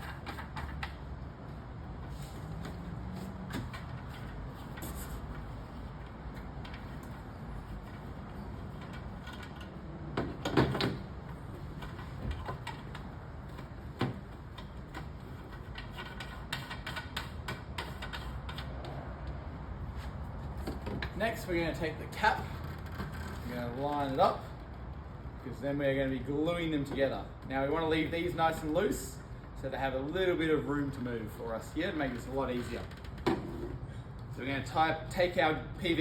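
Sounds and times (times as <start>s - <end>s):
plastic pipes clicking and knocking: 8.7s - 19.0s.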